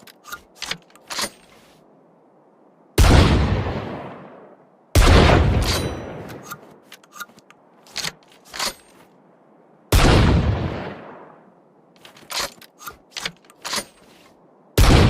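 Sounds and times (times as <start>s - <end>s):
loud echoing gunshot: 3.0s - 4.2s, 5.0s - 6.1s, 9.9s - 11.2s, 14.8s - 15.0s.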